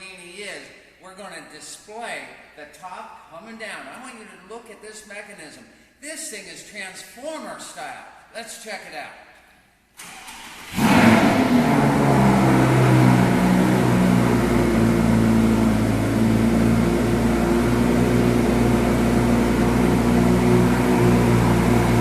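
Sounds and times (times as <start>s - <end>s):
car engine starting and idling: 10.0s - 22.0s.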